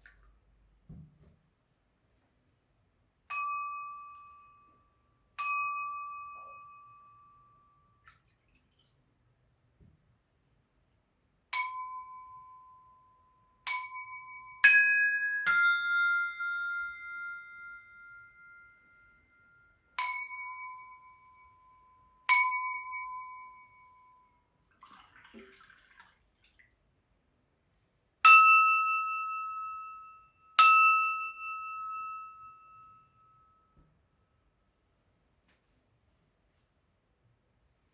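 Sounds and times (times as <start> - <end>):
crystal glasses ringing when struck: 3.3 - 4.8, 5.4 - 7.6, 11.6 - 13.0, 13.7 - 24.3, 28.3 - 33.8.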